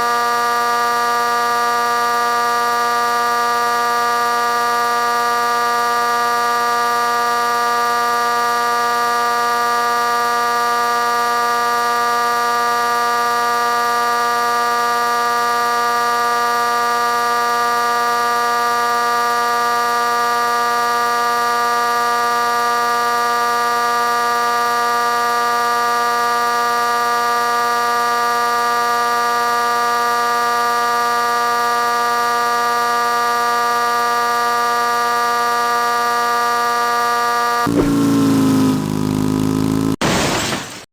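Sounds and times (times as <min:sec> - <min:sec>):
loud steady buzzing tone: 0:00.0 - 0:40.7.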